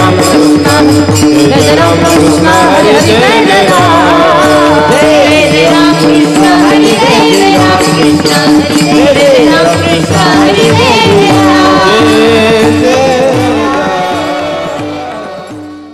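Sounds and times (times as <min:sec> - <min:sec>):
drum beats: 0:00.0 - 0:15.9
harmonium: 0:00.0 - 0:15.9
jingling hand cymbals: 0:00.0 - 0:15.9
voices singing a chant: 0:00.0 - 0:15.9.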